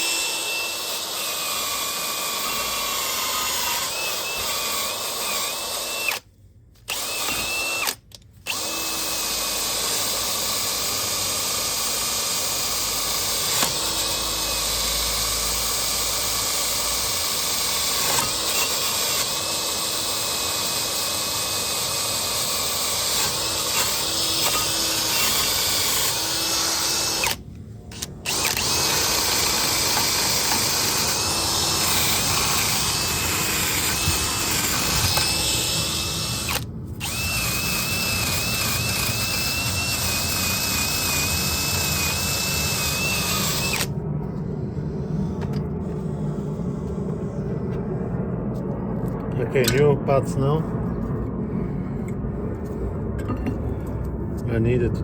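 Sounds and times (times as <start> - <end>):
drill wire brush scrubbing metal: 0.0 - 6.2, 8.5 - 43.8.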